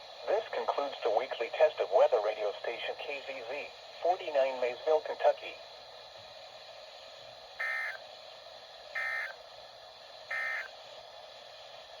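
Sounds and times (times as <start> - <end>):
digital data bursts: 7.6 - 8.0, 9.0 - 9.4, 10.3 - 10.7.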